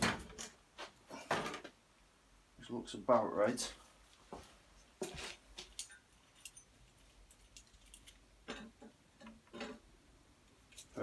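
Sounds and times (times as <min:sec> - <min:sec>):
light metallic clinks and knocks: 0:05.6 - 0:09.8.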